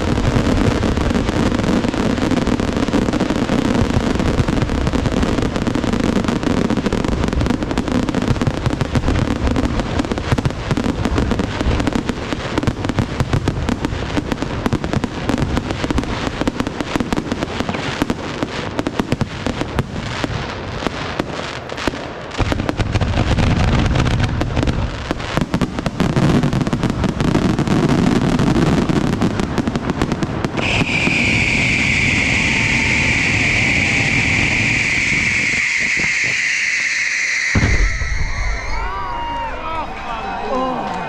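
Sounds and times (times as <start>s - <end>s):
fireworks crackling and popping: 0.0s - 40.0s
fireworks booming: 0.0s - 40.9s
shrill firework whistle: 30.6s - 39.9s.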